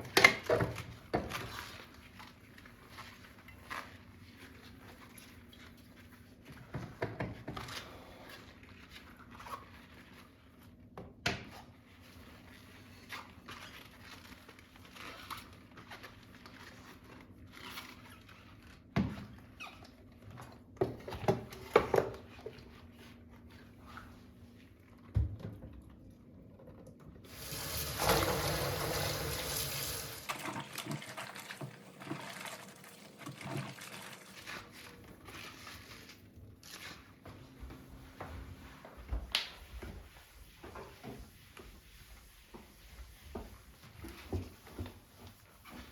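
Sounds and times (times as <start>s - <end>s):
kitchen tap running: 27.3s - 35.0s.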